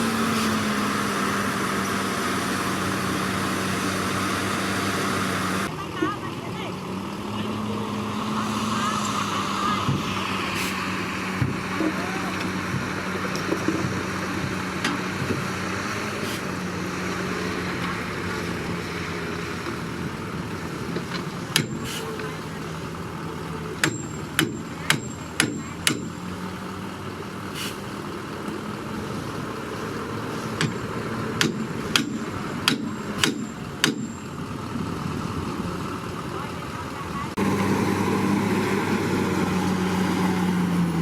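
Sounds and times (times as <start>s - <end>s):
bulldozer diesel engine running: 0.0s - 41.0s
ringing metallic clanks: 21.5s - 22.0s, 23.8s - 26.2s, 30.6s - 34.4s.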